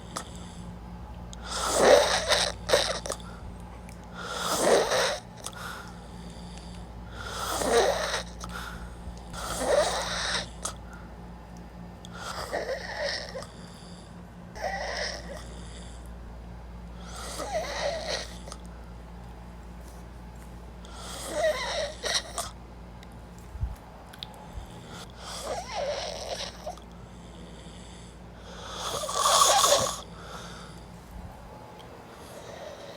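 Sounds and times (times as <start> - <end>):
person snoring: 1.4 - 3.3, 4.2 - 10.8, 12.1 - 16.1, 17.0 - 18.6, 20.8 - 22.6, 24.9 - 30.9, 32.2 - 32.9.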